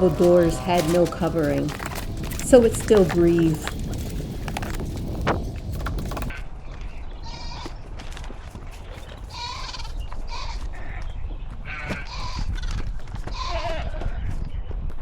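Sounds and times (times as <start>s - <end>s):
farm animal calling: 0.0s - 5.2s, 9.3s - 10.8s
steady low rumble: 0.0s - 6.3s.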